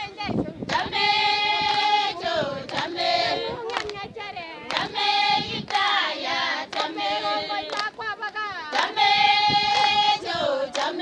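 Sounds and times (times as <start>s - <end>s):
high voices singing: 0.0s - 11.0s
sharp claps: 3.6s - 4.0s, 6.7s - 7.0s, 7.6s - 8.9s, 9.7s - 10.0s.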